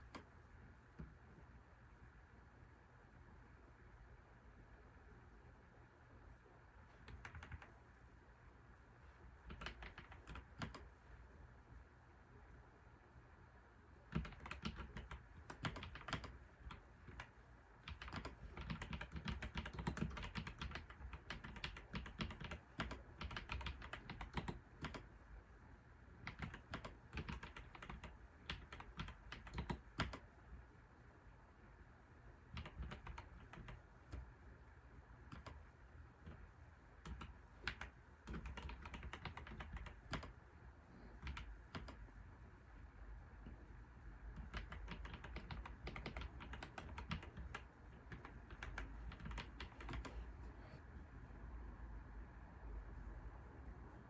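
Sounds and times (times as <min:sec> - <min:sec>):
typing on computer keyboard: 0:07.0 - 0:07.8, 0:09.5 - 0:10.9, 0:14.1 - 0:25.2, 0:26.2 - 0:30.3, 0:32.5 - 0:34.3, 0:35.3 - 0:36.4, 0:37.0 - 0:40.4, 0:41.2 - 0:42.1, 0:44.3 - 0:50.3.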